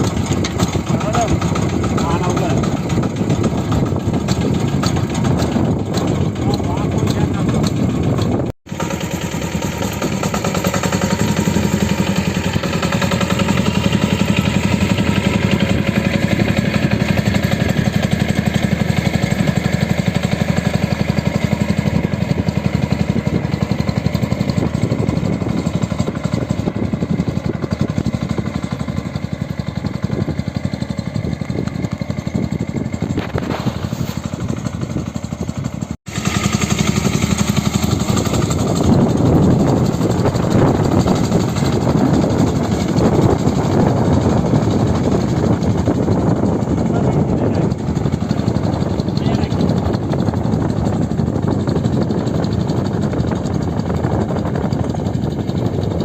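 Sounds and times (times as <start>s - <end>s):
engine running: 0.0s - 56.0s.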